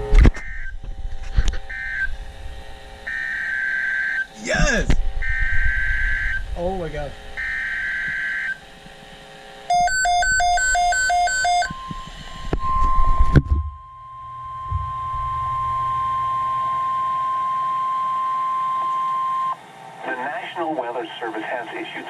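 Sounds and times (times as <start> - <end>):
steady warning alarm tone: 0.4 - 19.6
rapid two-pitch electronic beeping: 3.1 - 6.4, 9.7 - 14.7
low rumble: 4.8 - 7.4.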